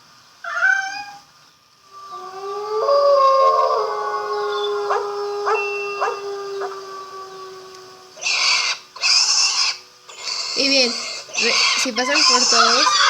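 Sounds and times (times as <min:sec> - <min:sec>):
dog howling: 0:01.9 - 0:13.0
dog yelps: 0:04.6 - 0:06.9, 0:07.7 - 0:13.0.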